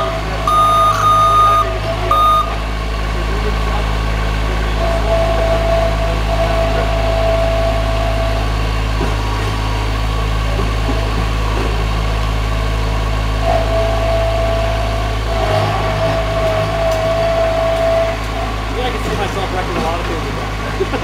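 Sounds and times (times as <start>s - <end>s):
steady whine: 0.0s - 10.7s
loader engine running: 0.0s - 21.0s.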